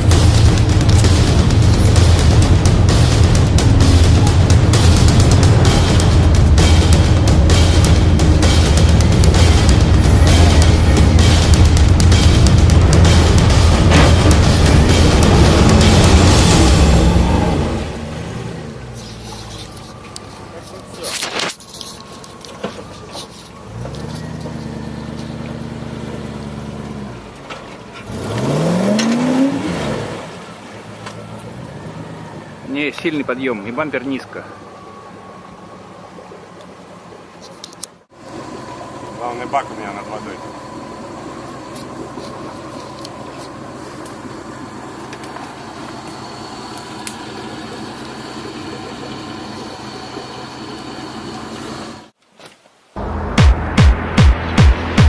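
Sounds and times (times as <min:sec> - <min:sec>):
rush of noise: 0:00.0 - 0:18.8
off-road vehicle engine revving: 0:00.0 - 0:21.5, 0:22.1 - 0:34.6.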